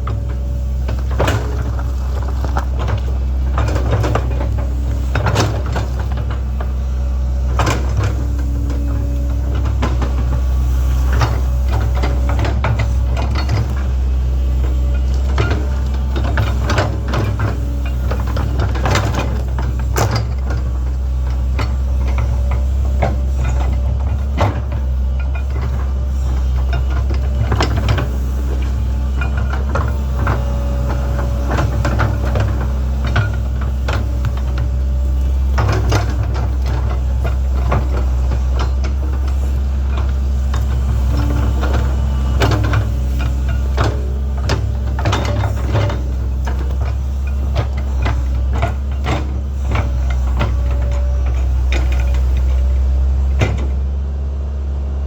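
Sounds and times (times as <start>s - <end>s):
excavator diesel engine running: 0.0s - 55.0s
machine knocks and clunks: 7.4s - 53.9s.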